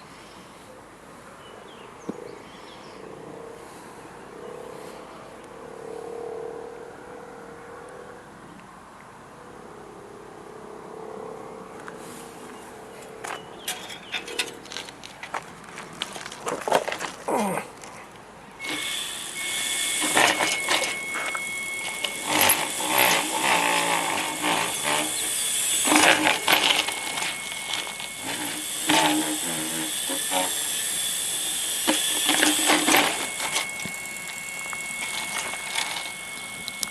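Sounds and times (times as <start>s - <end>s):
electric motor high whine: 18.6s - 36.9s.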